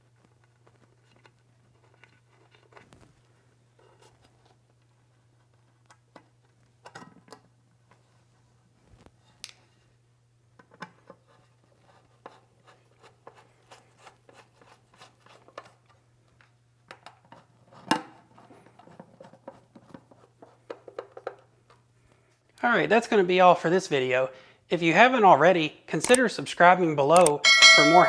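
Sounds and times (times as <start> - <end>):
screwdriver and metal cover clicks: 27.2 - 27.4.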